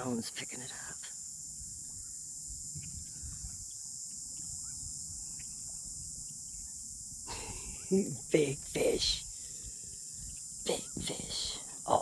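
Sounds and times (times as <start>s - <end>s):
insects droning: 0.0s - 12.0s
wind rumble on microphone: 1.6s - 7.3s.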